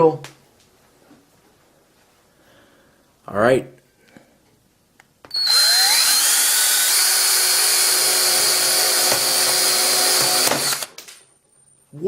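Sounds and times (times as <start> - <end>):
power drill whining: 5.3 - 11.0.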